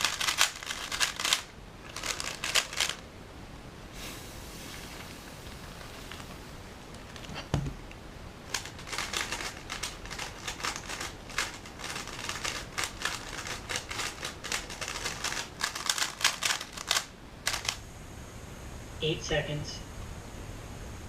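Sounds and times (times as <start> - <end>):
puzzle cube clicking: 0.0 - 3.0, 8.5 - 17.8.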